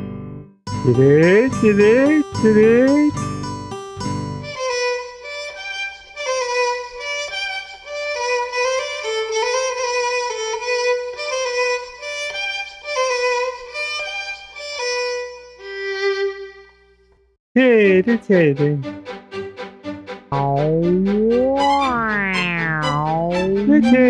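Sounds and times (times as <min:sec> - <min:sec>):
solo violin melody: 0:04.4 - 0:16.8, 0:18.5 - 0:24.0.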